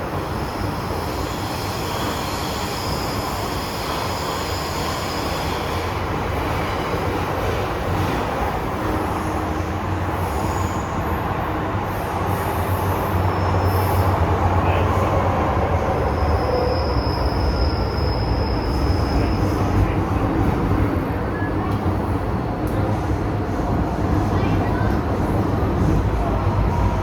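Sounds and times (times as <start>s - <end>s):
train wheels rumbling in tunnel: 0.0s - 27.0s
high wheel squeal: 0.2s - 5.9s, 12.6s - 14.4s, 15.7s - 19.8s.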